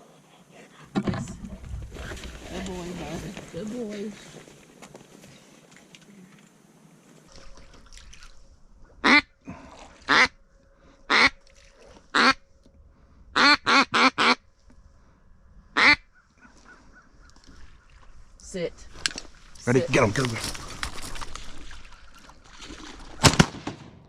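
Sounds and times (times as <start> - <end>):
duck quacking: 9.0 - 9.3, 10.1 - 10.3, 11.1 - 11.4, 12.1 - 12.4, 13.4 - 14.4, 15.8 - 16.8.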